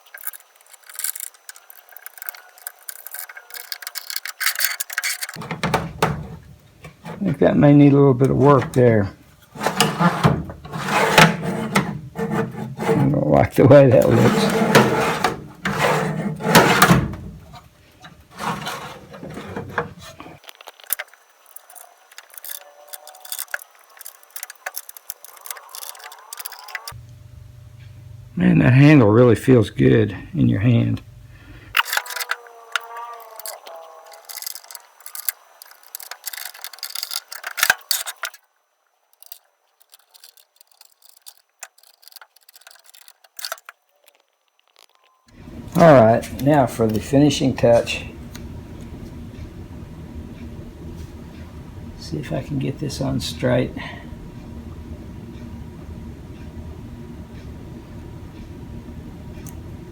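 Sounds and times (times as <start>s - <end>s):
small hand tools clicking: 0.0s - 5.4s, 20.5s - 27.0s, 31.8s - 38.4s, 39.2s - 44.2s
file scraping metal: 0.7s - 7.5s, 9.4s - 20.4s.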